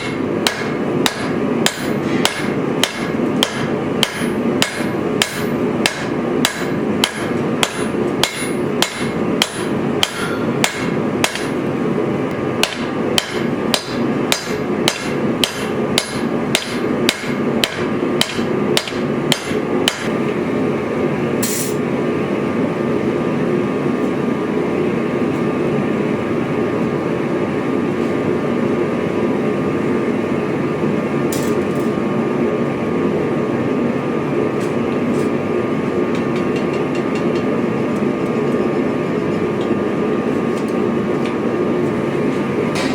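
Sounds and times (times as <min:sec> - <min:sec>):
hammer striking steel on anvil: 0:00.0 - 0:11.6, 0:12.6 - 0:20.1
steady rushing hum: 0:00.0 - 0:42.9.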